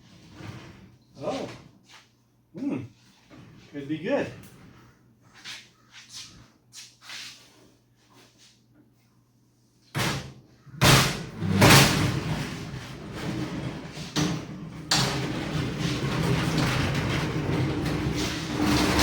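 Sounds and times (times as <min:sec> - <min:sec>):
tool box rolling on casters: 0:11.3 - 0:19.0.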